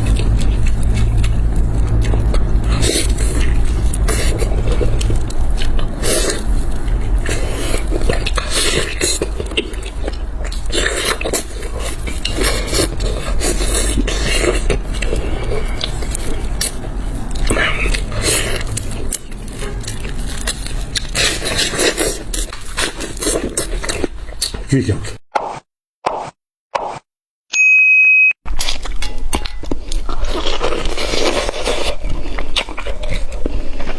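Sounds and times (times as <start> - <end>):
low steady hum: 0.0 - 23.6
person biting and chewing food: 0.0 - 27.1, 28.5 - 33.9.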